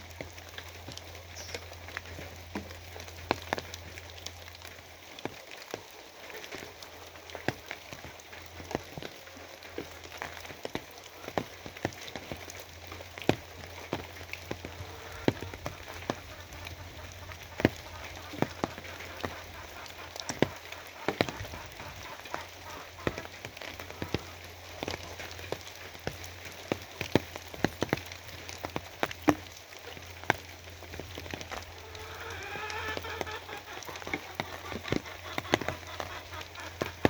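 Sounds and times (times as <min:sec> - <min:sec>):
raindrops tapping hard surface: 0:00.0 - 0:37.0
rain hissing: 0:09.2 - 0:37.0.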